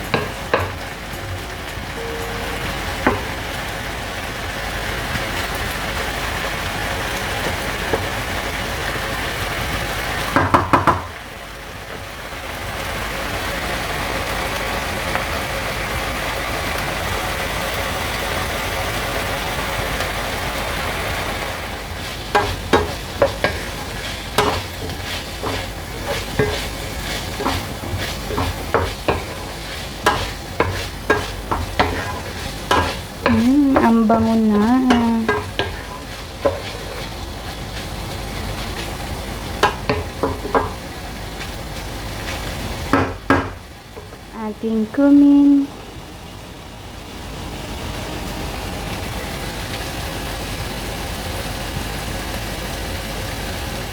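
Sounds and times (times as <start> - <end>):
meat sizzling in a frying pan: 0.0 - 53.9
brief wavering tone: 2.0 - 3.0
utensil scraping a pan: 21.9 - 42.9.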